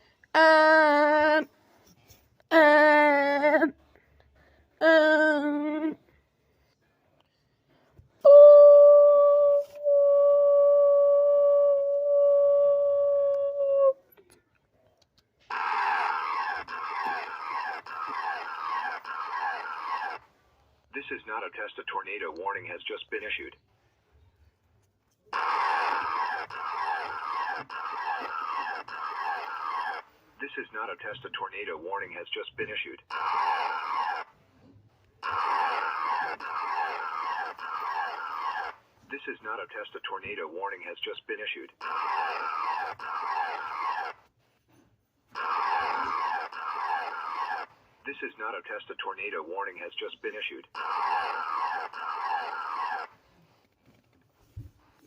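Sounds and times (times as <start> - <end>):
rapid falling electronic sweeps: 15.5 - 20.2, 25.4 - 30.0, 33.1 - 34.3, 35.2 - 38.8, 41.8 - 44.2, 45.4 - 47.7, 50.8 - 53.1.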